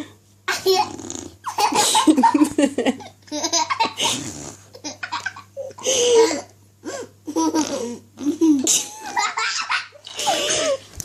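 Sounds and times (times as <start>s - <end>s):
girls laughing and giggling: 1.7s - 4.0s
blowing raspberries on skin: 4.0s - 4.6s.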